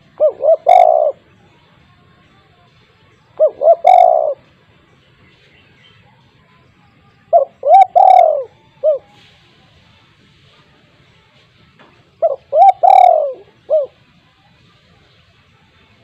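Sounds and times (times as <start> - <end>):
dove cooing: 0.0 - 1.3, 3.4 - 4.5, 7.3 - 9.3, 12.2 - 14.1.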